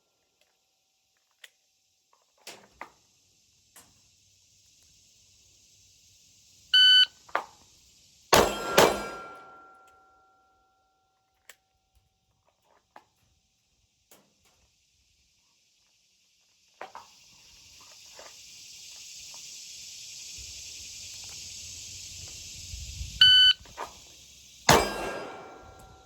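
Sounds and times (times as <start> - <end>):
shot timer beep: 6.8 - 7.1, 23.2 - 23.6
handgun shots: 8.4 - 9.5, 24.7 - 25.9.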